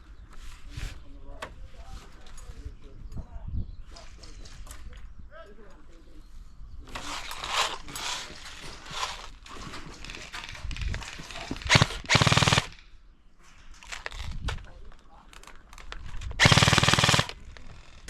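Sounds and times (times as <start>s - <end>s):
movement noise: 6.8s - 12.7s
rapid full-auto airsoft burst: 11.2s - 12.8s, 16.4s - 18.0s
airsoft gun shots: 11.5s - 12.8s, 16.4s - 17.4s.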